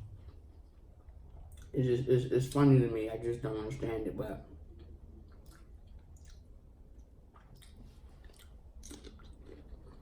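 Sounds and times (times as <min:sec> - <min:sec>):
faint chewing of food: 0:00.0 - 0:01.8, 0:04.7 - 0:10.0.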